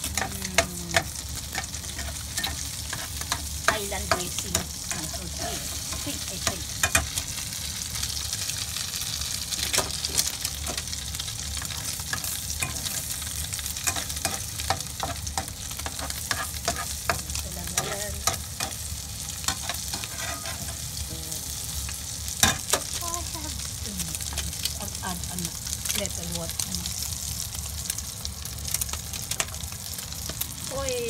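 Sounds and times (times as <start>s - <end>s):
omelette sizzling in frying pan: 0.0s - 31.0s
utensil scraping pan: 0.9s - 7.2s, 11.6s - 18.8s, 19.4s - 21.0s.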